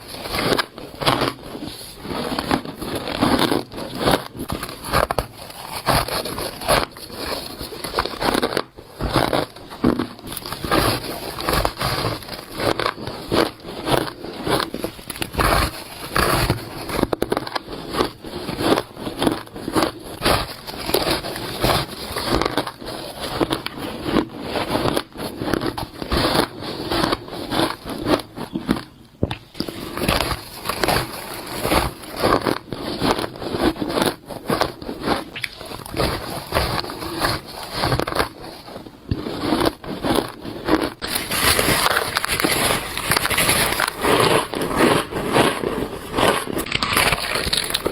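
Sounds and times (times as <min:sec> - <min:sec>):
crunching bites of shaved ice: 0:39.2 - 0:47.9.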